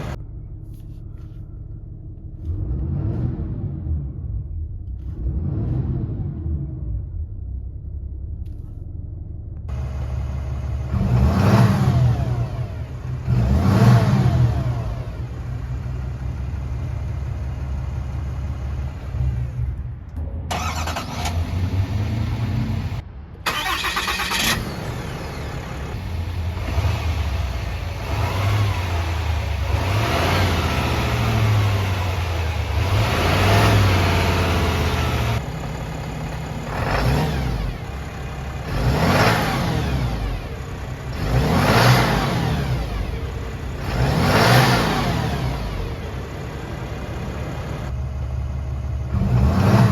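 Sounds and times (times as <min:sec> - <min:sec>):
diesel engine idling and revving: 0:00.0 - 0:49.9.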